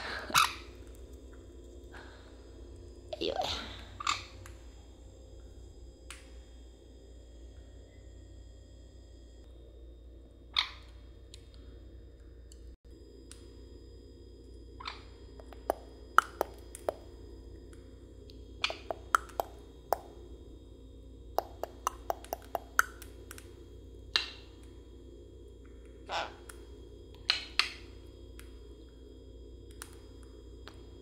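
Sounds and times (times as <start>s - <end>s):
parrot beak clicking on food: 15.4s - 17.0s, 18.6s - 20.2s, 21.4s - 23.5s, 27.2s - 27.8s.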